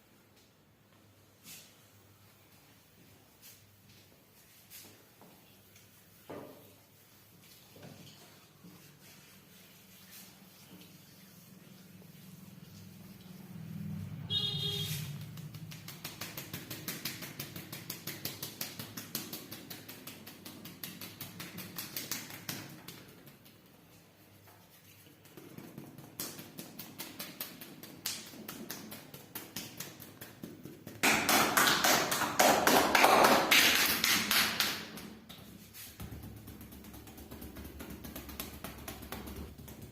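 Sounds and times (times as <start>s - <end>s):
hands tapping on skin: 15.2s - 23.6s, 25.2s - 39.9s.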